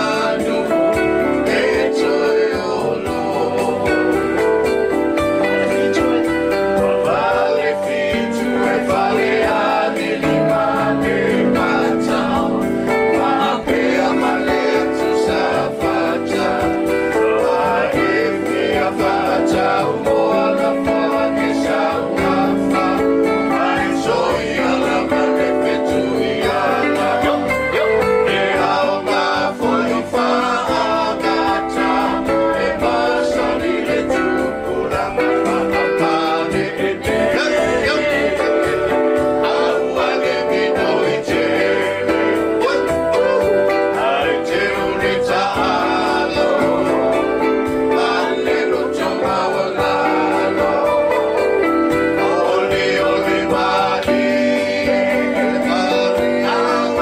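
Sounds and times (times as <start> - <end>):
people singing together: 0.0 - 57.0
strummed guitar: 0.0 - 57.0.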